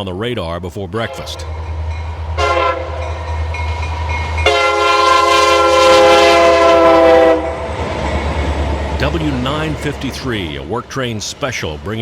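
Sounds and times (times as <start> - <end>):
low train rumble: 0.8 - 12.0
locomotive air horn blast: 1.1 - 1.6, 2.4 - 3.3, 4.4 - 7.7.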